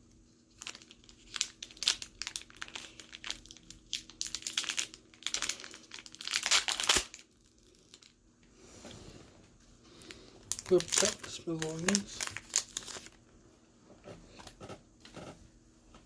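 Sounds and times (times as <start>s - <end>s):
foil wrapper crinkling and tearing: 0.3s - 8.2s, 10.0s - 13.3s.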